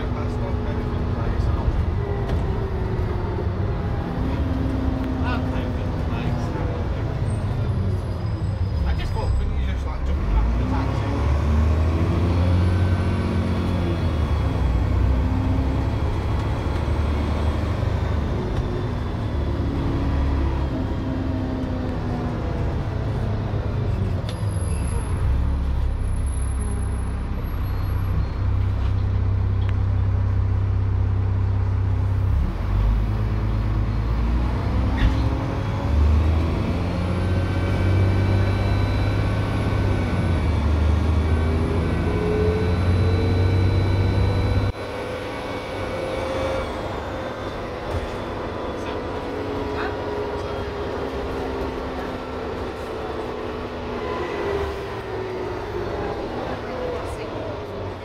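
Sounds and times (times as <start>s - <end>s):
bus diesel engine: 0.0s - 58.0s.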